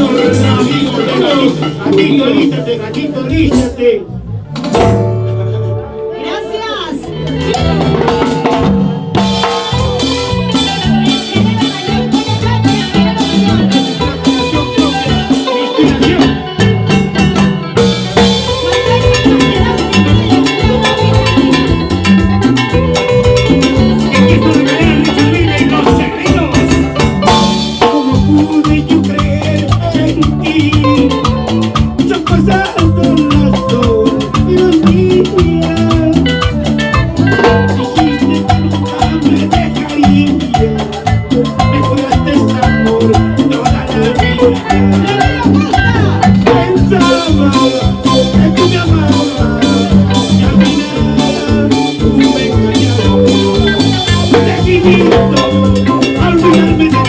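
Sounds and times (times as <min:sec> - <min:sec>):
band playing latin dance music: 0:00.0 - 0:57.0.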